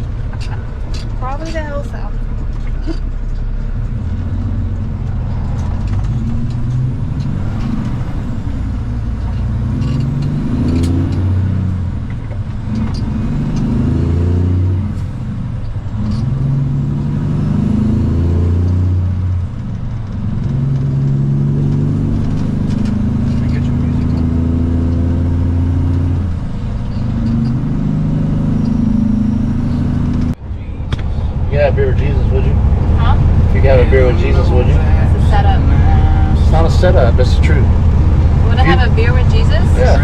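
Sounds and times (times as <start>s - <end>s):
cab rattles: 0.0s - 17.1s, 18.5s - 40.0s
truck diesel engine shifting gears: 0.0s - 40.0s.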